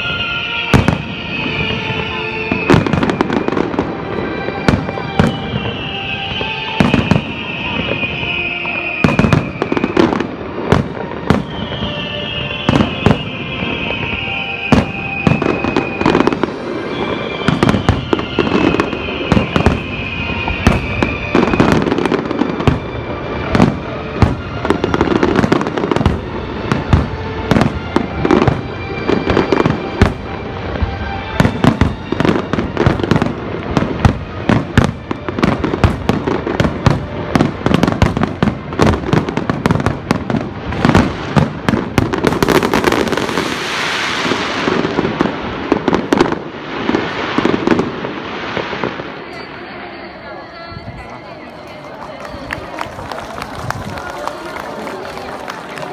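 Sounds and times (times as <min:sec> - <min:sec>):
fireworks bangs and crackling: 0:00.0 - 0:55.9
whistling shells: 0:05.2 - 0:10.2, 0:11.3 - 0:22.9.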